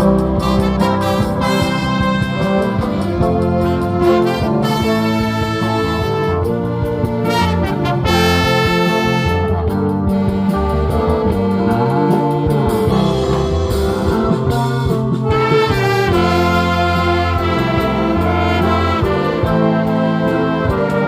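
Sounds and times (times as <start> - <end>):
bass: 0.0 - 21.0
drums: 0.0 - 21.0
horn playing melody: 0.0 - 21.0.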